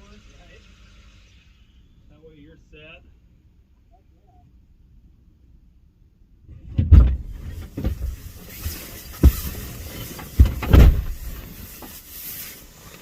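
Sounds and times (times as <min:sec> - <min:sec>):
dull thumps: 0:06.5 - 0:12.0.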